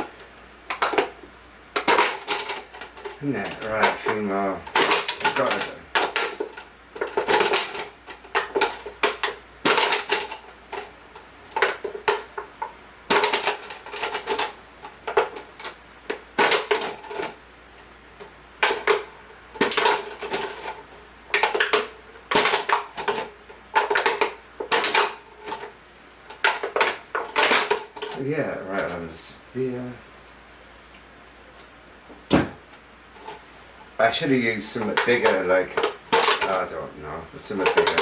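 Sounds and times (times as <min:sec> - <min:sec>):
plastic bottle clicking and crackling: 0:01.8 - 0:10.9, 0:11.5 - 0:17.4, 0:18.2 - 0:25.7, 0:26.3 - 0:28.2, 0:34.8 - 0:36.7, 0:37.5 - 0:38.0.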